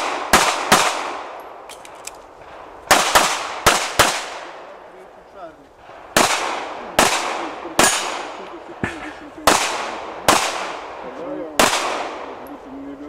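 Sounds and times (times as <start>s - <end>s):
handgun shots with echo: 6.2s - 10.8s.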